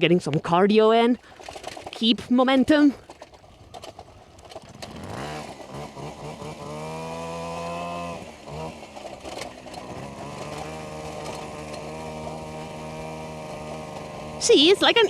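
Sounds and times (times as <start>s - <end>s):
moped engine revving: 0.7s - 15.0s.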